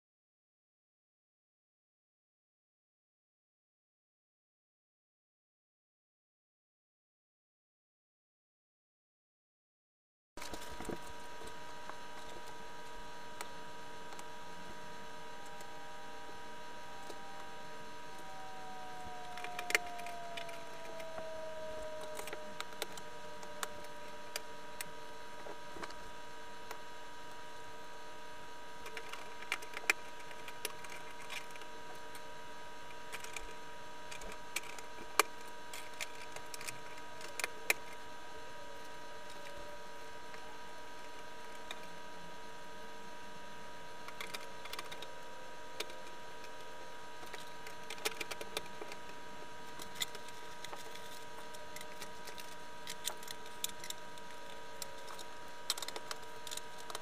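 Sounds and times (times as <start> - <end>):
steady electrical hum: 10.4 - 57.0
faint tone sliding down: 11.4 - 32.4.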